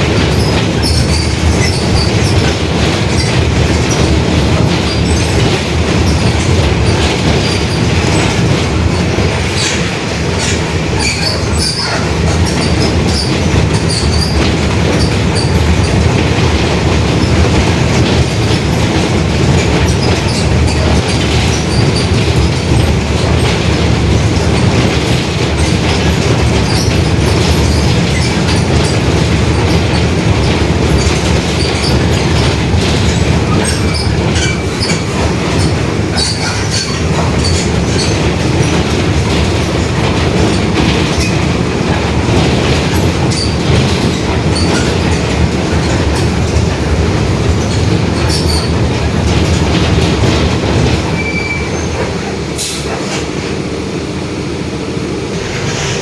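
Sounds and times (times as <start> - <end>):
body rattles and clicks: 0.0 - 53.3
diesel bus engine drone: 52.2 - 56.0
road noise: 52.2 - 56.0.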